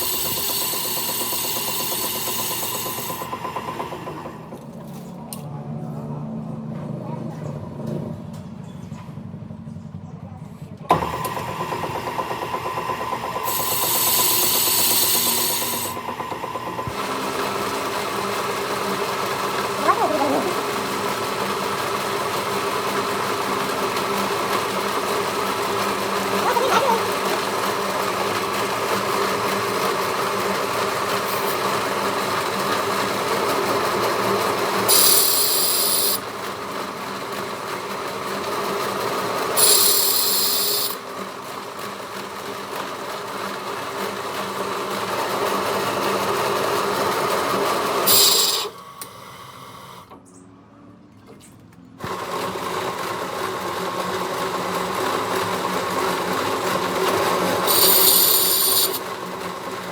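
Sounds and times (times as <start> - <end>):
harsh high-pitched bursts: 0.0 - 3.2, 13.5 - 16.0, 26.3 - 27.4, 39.6 - 41.0, 57.6 - 59.0
machine tool humming: 0.0 - 4.7, 10.9 - 36.3, 39.4 - 41.2, 47.8 - 49.1, 54.6 - 59.8.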